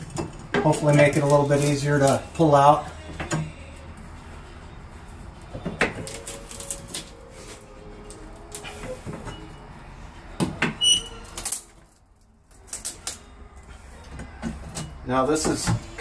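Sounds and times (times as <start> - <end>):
metallic squeal: 3.3 - 11.7
metal frame creaking: 5.2 - 12.0.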